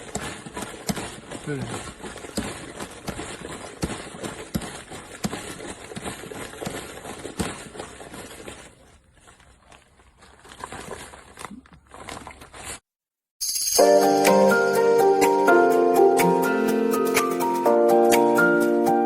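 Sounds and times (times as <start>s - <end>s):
music: 13.4s - 19.0s.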